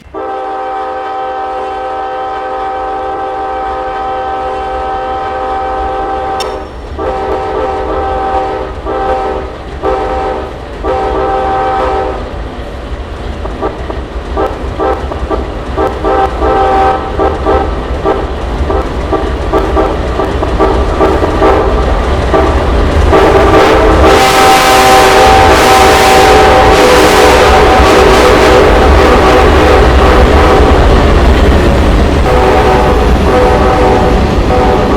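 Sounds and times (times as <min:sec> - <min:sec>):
locomotive air horn: 0:00.0 - 0:12.3, 0:14.4 - 0:30.9, 0:32.2 - 0:34.9
train rumbling: 0:00.0 - 0:34.9
train rushing noise: 0:00.0 - 0:34.9.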